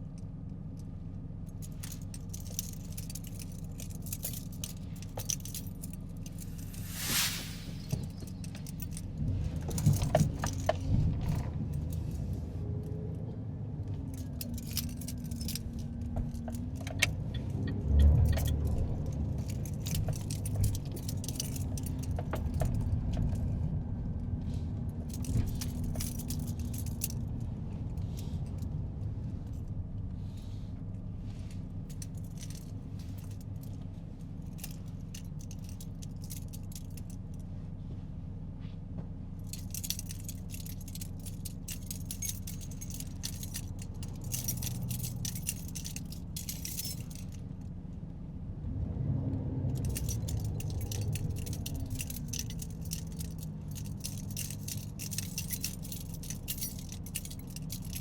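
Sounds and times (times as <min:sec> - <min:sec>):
engine and road rumble: 0:00.0 - 0:58.0
light clicks and rattles: 0:00.4 - 0:13.2, 0:13.9 - 0:23.6, 0:25.0 - 0:28.8, 0:31.5 - 0:37.5, 0:39.4 - 0:47.7, 0:49.7 - 0:58.0.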